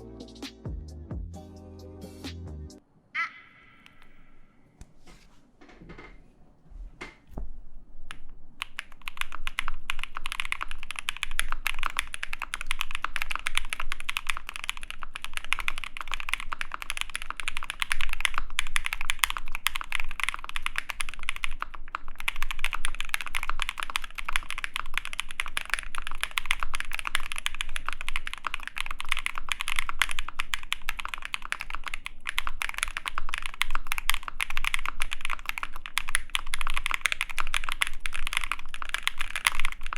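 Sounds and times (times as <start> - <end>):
fast typing on mechanical keyboard: 8.1 - 39.9.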